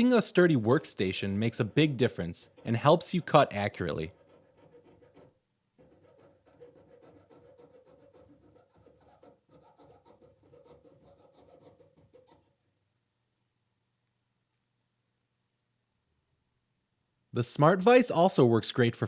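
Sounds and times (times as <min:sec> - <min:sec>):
saw rasping on metal: 0:02.4 - 0:12.5.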